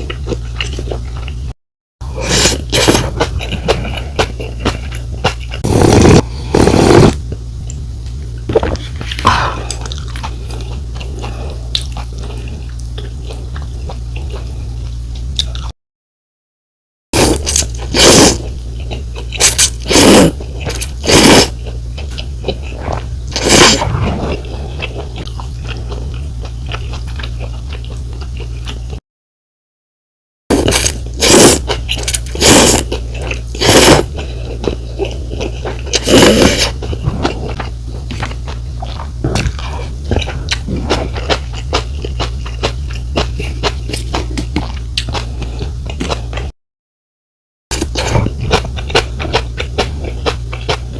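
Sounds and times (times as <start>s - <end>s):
slurping noodles: 2.1s - 4.0s, 5.6s - 7.2s, 17.2s - 18.5s, 19.4s - 21.6s, 22.5s - 25.2s, 30.5s - 42.7s
soft wet chewing: 36.6s - 46.5s.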